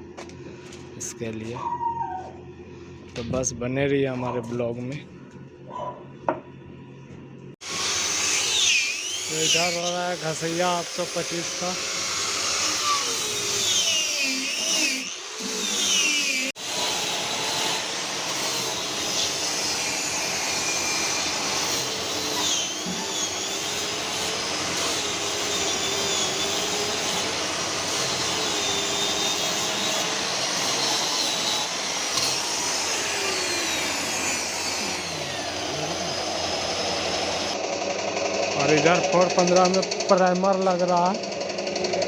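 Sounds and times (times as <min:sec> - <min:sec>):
electric sander whining on wood: 0:07.6 - 0:38.5.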